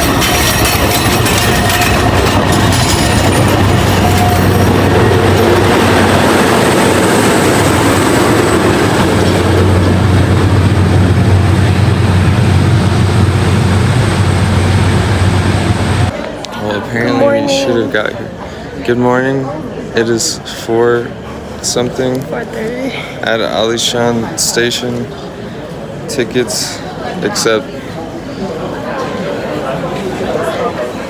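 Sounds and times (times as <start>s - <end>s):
train clatter: 0.0s - 16.1s
train rumbling past: 0.0s - 16.2s.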